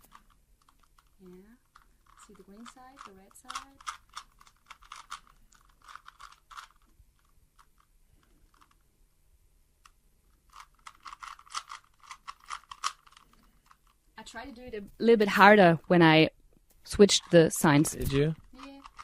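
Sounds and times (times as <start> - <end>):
puzzle cube plastic clicks: 0.0 - 8.8, 9.8 - 14.0, 17.1 - 19.0.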